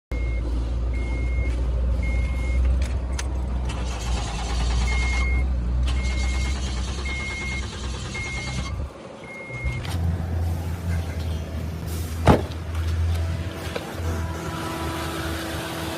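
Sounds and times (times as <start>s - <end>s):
car warning chime beeping: 0.1s - 2.7s, 4.8s - 9.9s
car low rumble: 0.1s - 15.9s.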